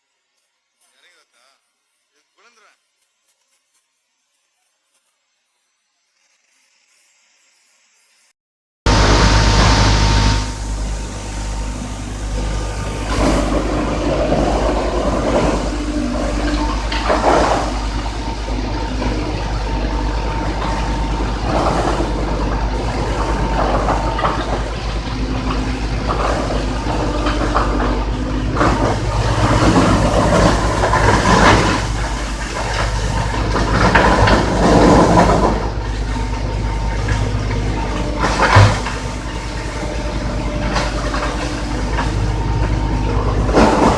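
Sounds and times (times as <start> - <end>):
wood being chipped: 1.7 - 8.3
wood chipper humming: 8.9 - 43.9.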